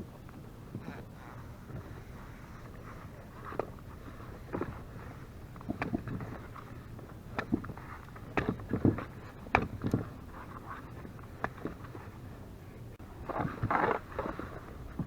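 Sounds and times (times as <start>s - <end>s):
water: 0.0s - 15.0s
wind: 0.0s - 15.0s
gear knocking in plastic kayak: 0.3s - 12.0s.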